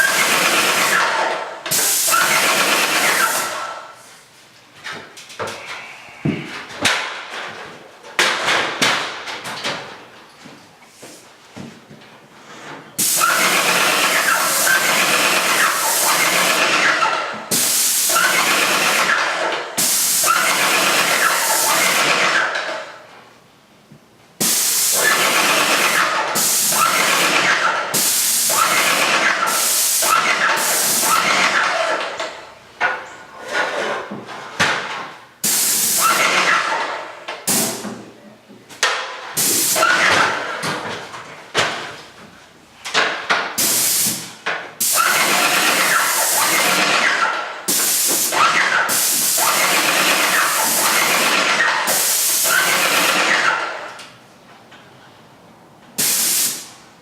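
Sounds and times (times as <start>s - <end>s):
paint sprayer hissing: 0.0s - 4.0s, 13.0s - 16.9s, 19.8s - 22.1s, 24.4s - 31.5s, 35.4s - 36.4s, 43.6s - 53.3s, 56.0s - 56.8s.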